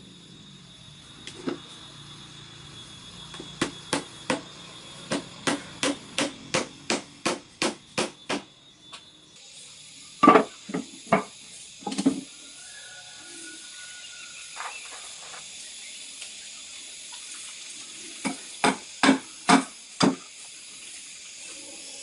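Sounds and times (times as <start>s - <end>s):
hammer striking: 5.1s - 8.5s, 18.3s - 20.2s.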